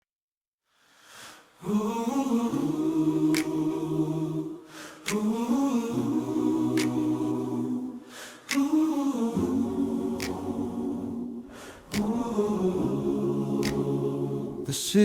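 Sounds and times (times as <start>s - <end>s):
wordless choir singing: 1.6s - 15.0s
breathy noise swell: 7.8s - 14.8s.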